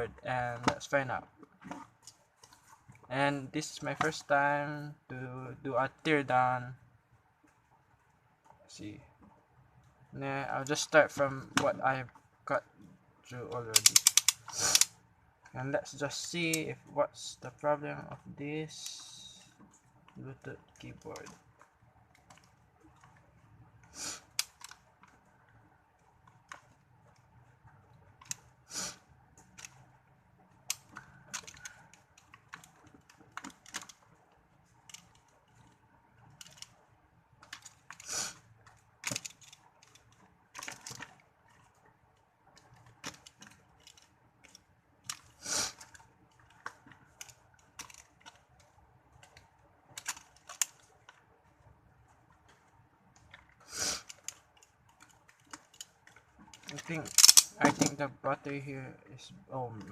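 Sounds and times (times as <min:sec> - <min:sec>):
plastic clicks and snaps: 0:13.7 - 0:14.9, 0:54.0 - 0:58.0.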